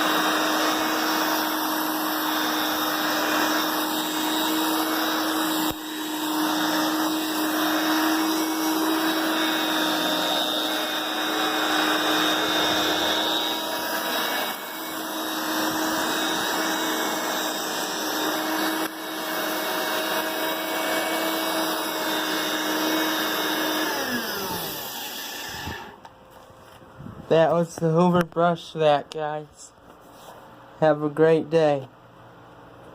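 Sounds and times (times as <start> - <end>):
hand vacuum running: 0.0 - 26.1.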